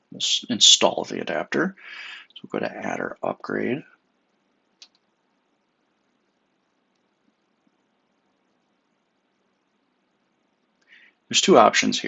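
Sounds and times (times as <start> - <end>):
faint room tone hiss: 0.0 - 12.0
faint short clicks: 4.8 - 5.1.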